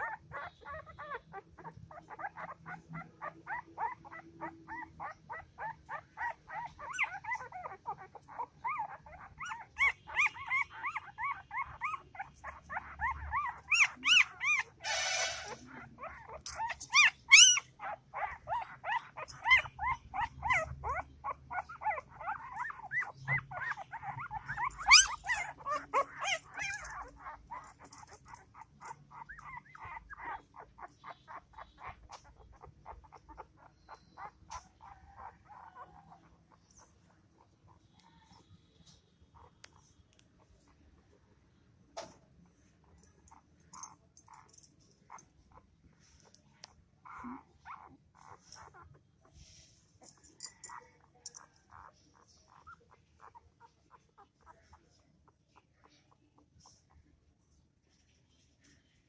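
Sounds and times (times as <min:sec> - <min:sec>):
puppy whimpering and crying: 0:00.0 - 0:38.4, 0:47.0 - 0:49.1, 0:50.1 - 0:54.9
puppy yelps: 0:00.0 - 0:38.4, 0:47.0 - 0:49.0, 0:50.1 - 0:54.8.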